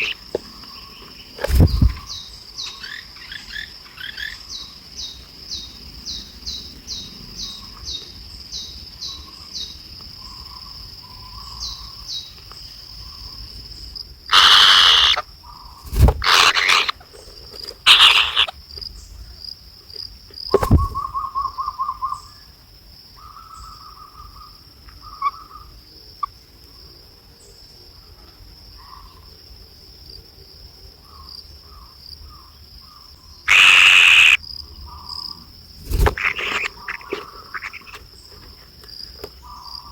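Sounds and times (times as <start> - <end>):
short warbling calls: 0.0 - 0.2, 14.3 - 15.2, 15.9 - 17.0, 17.9 - 18.5, 33.5 - 34.4, 35.9 - 38.0
insects chirping high-pitched: 0.0 - 39.9
low thumps: 1.4 - 2.1.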